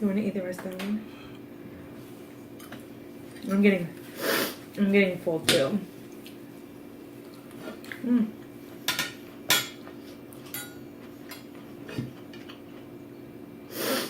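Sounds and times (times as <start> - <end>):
dishes and cutlery clinking: 8.9 - 12.5.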